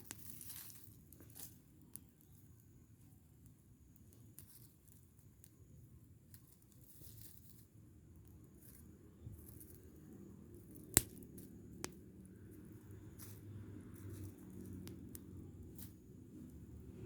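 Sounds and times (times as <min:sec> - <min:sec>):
fire crackling: 0:00.0 - 0:17.0
sharp snaps: 0:10.8 - 0:12.1.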